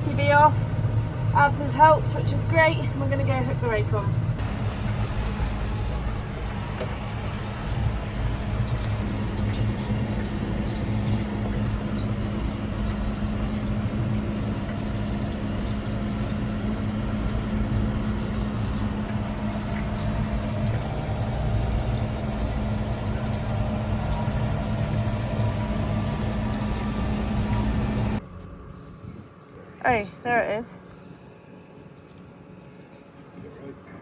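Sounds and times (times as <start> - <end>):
tractor diesel engine running: 0.0 - 33.2.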